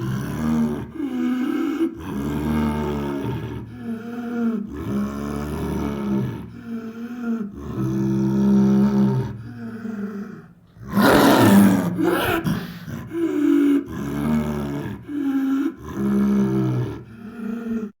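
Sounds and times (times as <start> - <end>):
lion growling: 0.0 - 17.9
lion roaring: 7.5 - 17.9.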